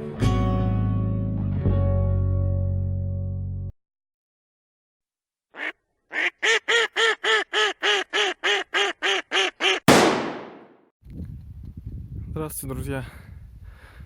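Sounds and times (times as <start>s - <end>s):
duck quacking: 5.6s - 9.8s
shotgun shot: 9.9s - 10.8s.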